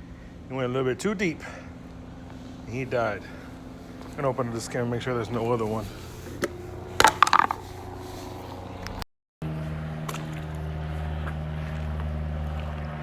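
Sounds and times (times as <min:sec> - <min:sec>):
pool pump motor humming: 0:00.0 - 0:13.0
container lid clattering: 0:07.0 - 0:07.6.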